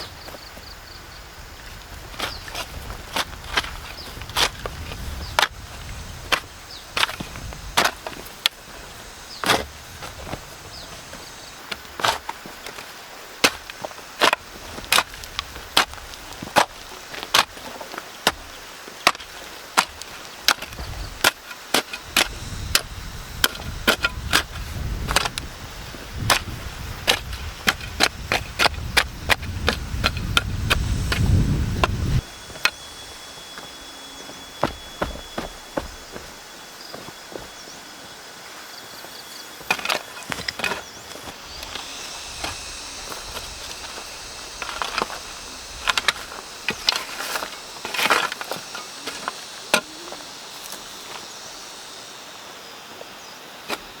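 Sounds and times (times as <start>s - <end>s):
tool chopping wood: 9.4s - 10.4s, 11.0s - 25.5s, 26.2s - 32.8s, 34.6s - 36.4s.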